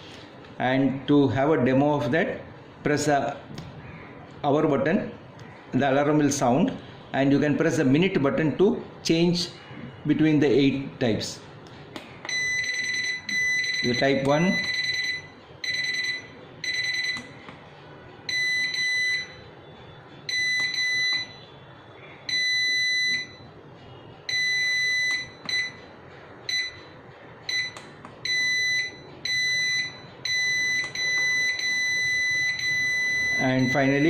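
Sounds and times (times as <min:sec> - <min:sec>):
alarm clock beeps: 0:12.3 - 0:17.3, 0:18.3 - 0:19.5, 0:20.2 - 0:21.5, 0:22.3 - 0:23.5, 0:24.2 - 0:25.9, 0:26.5 - 0:34.0.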